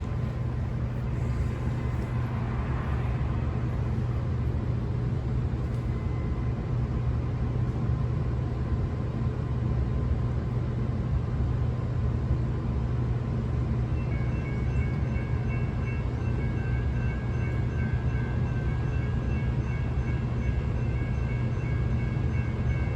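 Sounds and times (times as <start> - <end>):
motor vehicles rumbling: 0.0 - 7.8.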